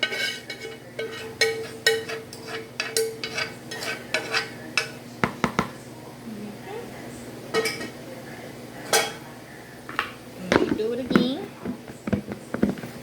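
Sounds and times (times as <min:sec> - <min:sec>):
utensil scraping a dish: 0:00.0 - 0:05.0.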